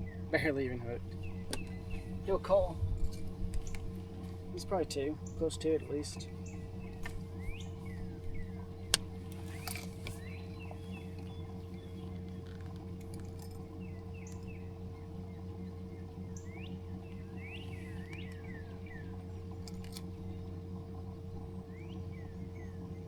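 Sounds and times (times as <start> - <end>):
small birds chirping: 0.0 - 2.8, 3.5 - 12.7, 13.8 - 19.6
steady low hum: 0.0 - 23.0.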